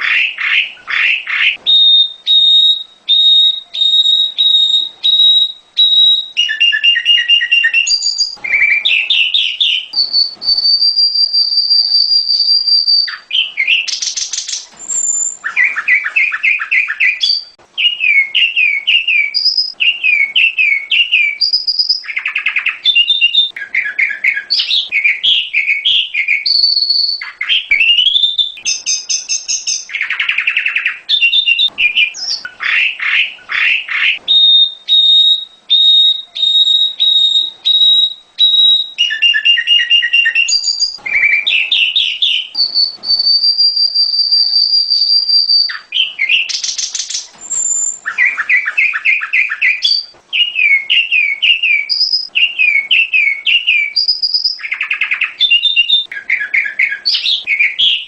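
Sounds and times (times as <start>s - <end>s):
bird singing varied song: 0.0s - 58.0s.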